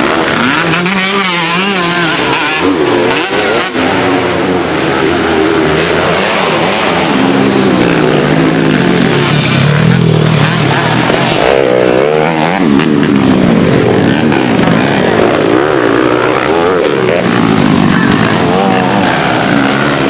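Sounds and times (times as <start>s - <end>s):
motorcycle engines revving: 0.0s - 20.0s.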